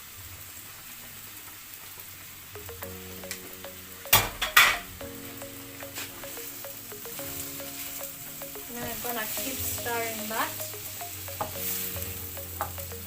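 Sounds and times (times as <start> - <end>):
steady frying sizzle: 0.0 - 13.0
loud sudden sizzle: 7.2 - 13.0.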